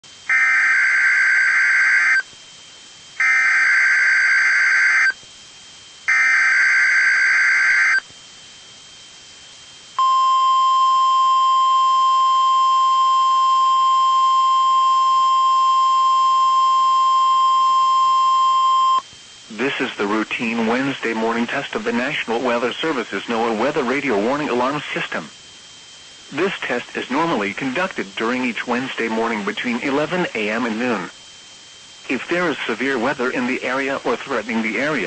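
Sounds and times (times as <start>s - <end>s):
steady alarm tone: 0.1s - 2.3s, 3.1s - 5.2s, 6.0s - 8.1s, 9.9s - 33.8s
buzzing digital data bursts: 0.3s - 2.3s.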